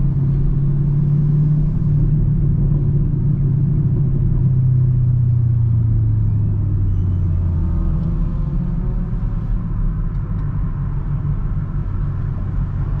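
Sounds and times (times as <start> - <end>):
car exhaust rumble: 0.0 - 13.0.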